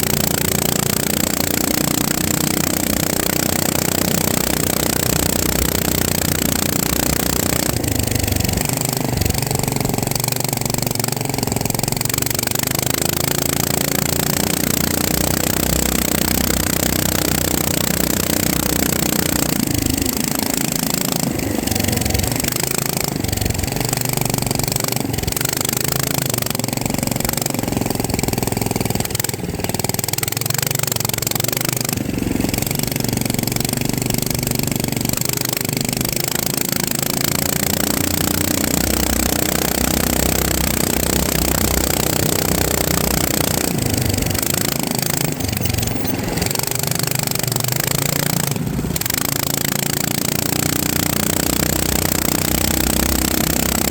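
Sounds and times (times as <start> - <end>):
drone propellers buzzing: 38.1 - 50.0.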